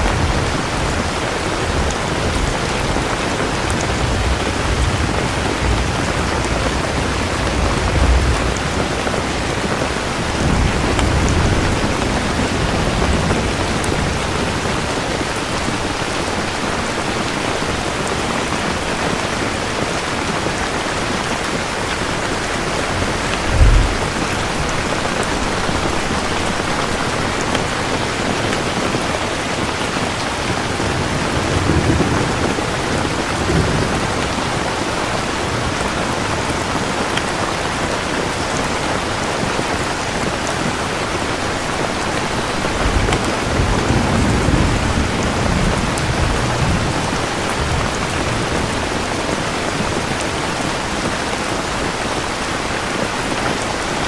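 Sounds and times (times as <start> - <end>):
sharp thunderclap: 0.0 - 14.7, 22.4 - 27.6
low thunder rumble: 0.0 - 16.1, 21.2 - 28.8, 30.7 - 34.7, 41.6 - 49.1
heavy rain: 0.0 - 54.0.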